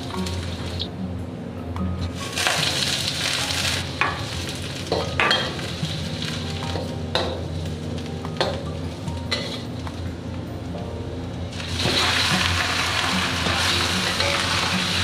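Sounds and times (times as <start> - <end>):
food sizzling in oil: 2.2 - 7.9, 11.5 - 15.0.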